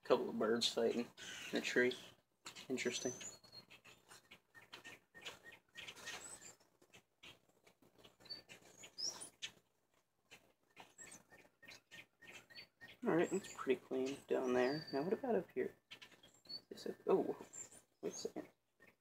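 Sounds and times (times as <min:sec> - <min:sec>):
birds chirping: 0:00.0 - 0:19.0
faint clicks and rustles: 0:01.4 - 0:13.0.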